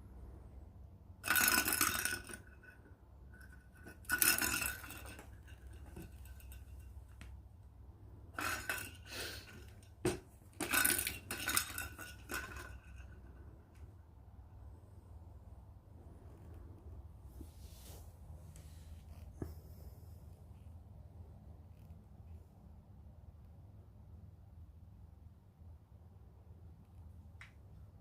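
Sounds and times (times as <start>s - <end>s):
hard objects clattering and clinking: 3.4s - 7.3s, 8.4s - 13.4s.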